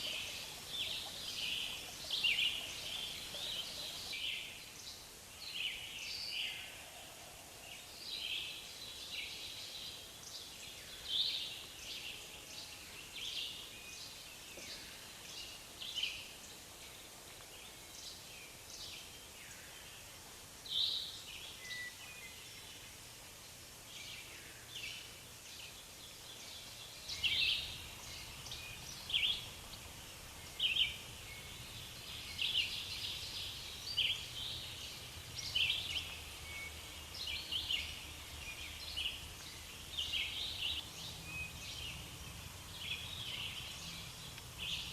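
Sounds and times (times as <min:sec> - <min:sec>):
small birds chirping: 0:00.0 - 0:06.7, 0:07.7 - 0:44.9
faint steady hiss: 0:00.0 - 0:44.9.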